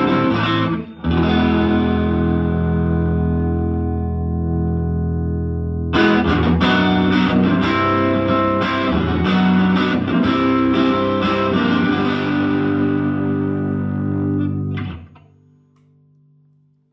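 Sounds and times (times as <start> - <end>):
electric guitar playing: 0.0 - 16.3.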